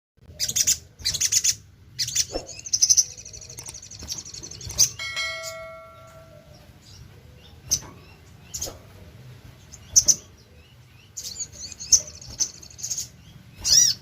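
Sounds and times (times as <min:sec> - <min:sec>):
bird trilling chirps: 0:00.4 - 0:08.8, 0:09.6 - 0:14.0
metallic ding: 0:05.0 - 0:06.6.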